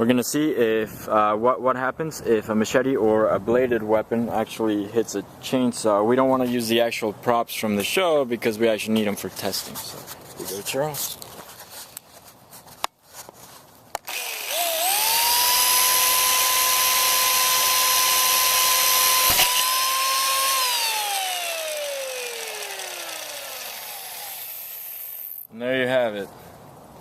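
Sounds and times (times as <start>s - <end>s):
chainsaw high whine: 14.0s - 25.5s
sword blade striking chainsaw: 19.2s - 19.6s.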